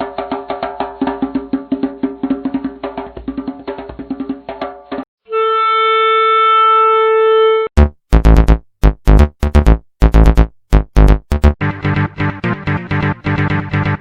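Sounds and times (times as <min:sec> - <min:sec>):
tapping rhythmic pattern: 0:07.8 - 0:11.6.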